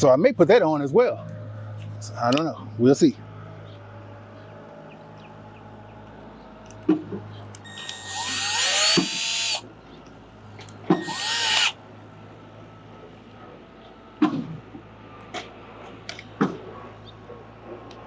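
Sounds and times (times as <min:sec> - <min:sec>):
power drill driving screws: 0:07.7 - 0:09.6, 0:10.9 - 0:11.8.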